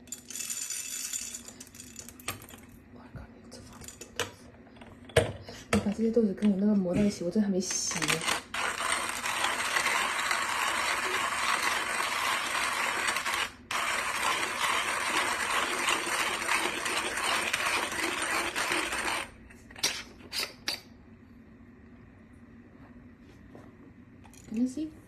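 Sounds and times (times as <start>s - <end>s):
coffee grinder grinding beans: 0.0s - 2.2s, 7.7s - 19.4s.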